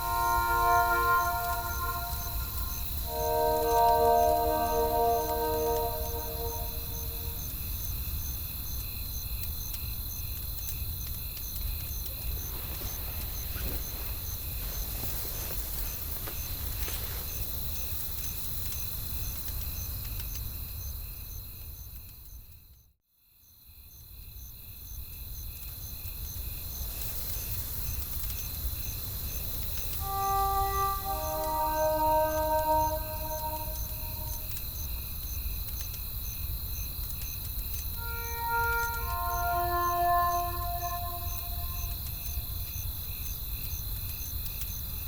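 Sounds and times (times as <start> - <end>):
crickets chirping: 0.0 - 7.5, 30.0 - 34.6, 38.0 - 42.3.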